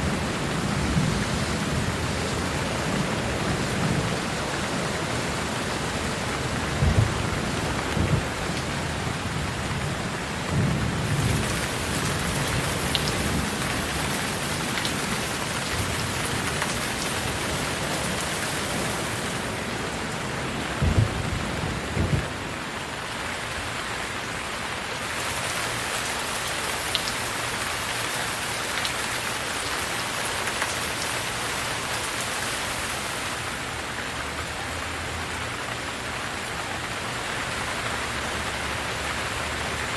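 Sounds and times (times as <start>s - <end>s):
steady rain falling: 0.0s - 39.9s
low rumbles of thunder: 6.6s - 22.7s.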